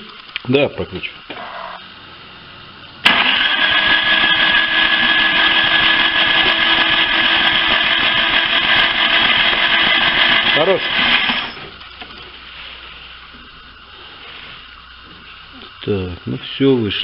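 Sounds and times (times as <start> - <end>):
starter motor cranking engine: 3.0 - 11.8.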